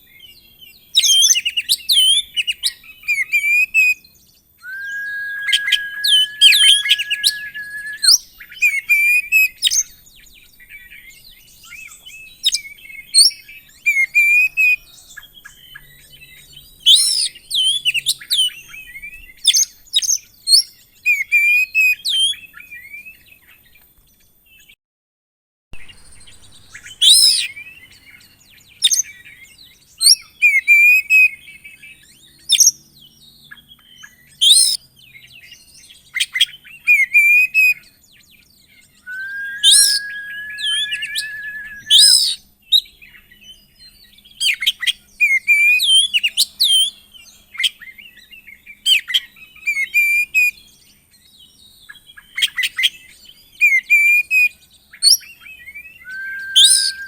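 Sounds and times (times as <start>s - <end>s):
bird trill: 4.6s - 8.3s, 39.1s - 42.4s, 56.1s - 57.0s
magpie-robin singing: 4.7s - 8.2s, 39.1s - 42.4s, 55.1s - 57.0s.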